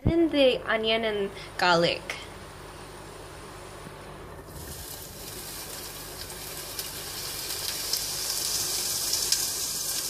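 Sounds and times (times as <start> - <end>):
onion sizzling in oil: 4.4 - 10.0.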